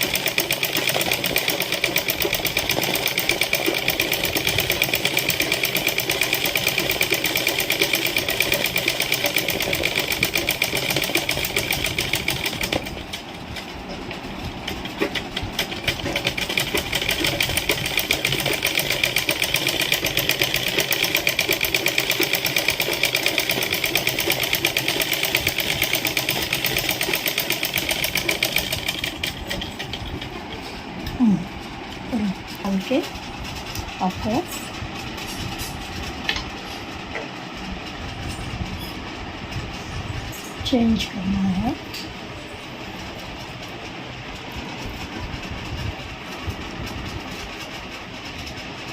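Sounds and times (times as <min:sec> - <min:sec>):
sewing machine stitching: 0:00.0 - 0:30.6.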